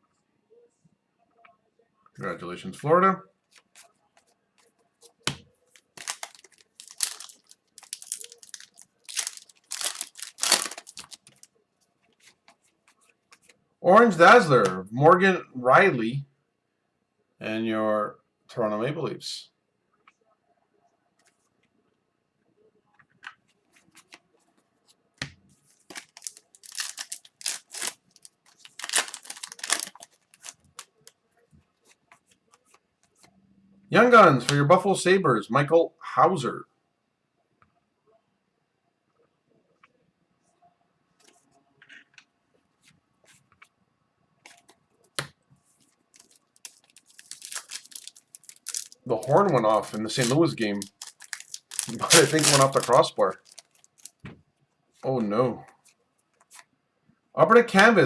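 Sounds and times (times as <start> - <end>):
plastic wrapper crinkling: 5.8 - 11.5, 25.9 - 31.1, 46.1 - 54.2.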